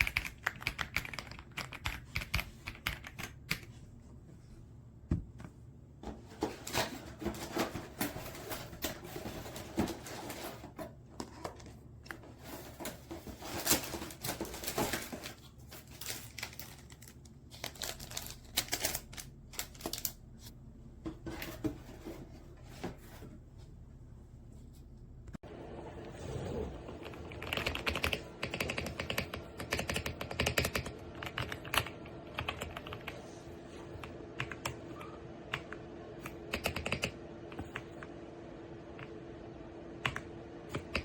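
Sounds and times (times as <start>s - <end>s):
mechanical keyboard typing: 0.0s - 3.7s, 27.0s - 33.2s, 34.0s - 34.8s, 35.5s - 37.9s, 40.0s - 41.0s.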